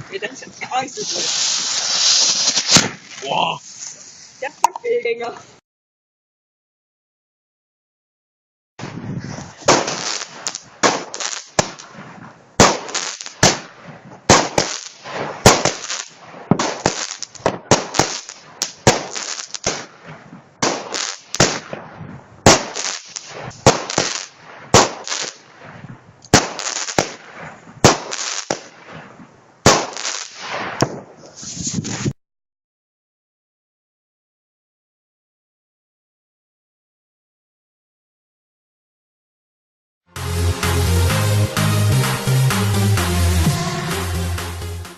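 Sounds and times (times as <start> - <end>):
fireworks bangs with crackling hiss: 0.0 - 5.1, 8.8 - 32.2.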